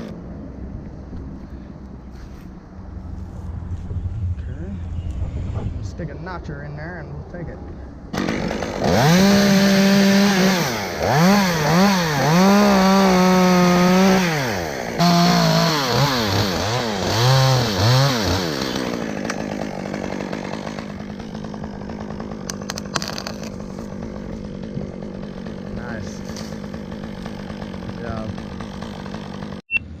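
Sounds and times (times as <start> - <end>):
chainsaw cutting: 7.8 - 29.6.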